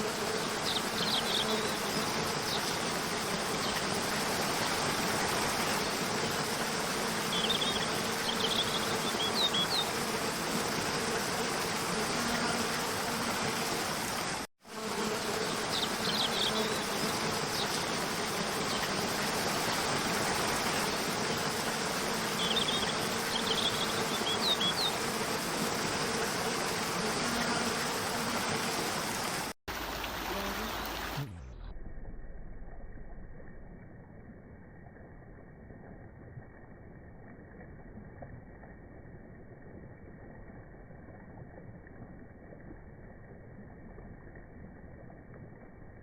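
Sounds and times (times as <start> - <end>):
stream rushing over rocks: 28.3 - 31.4.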